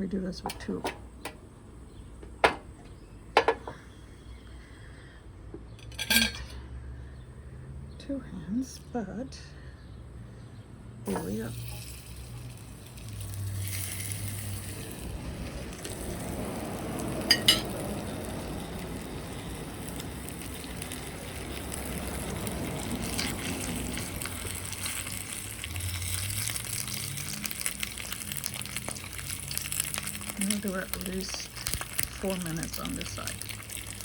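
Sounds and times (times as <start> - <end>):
steak sizzling in a pan: 11.1 - 34.0.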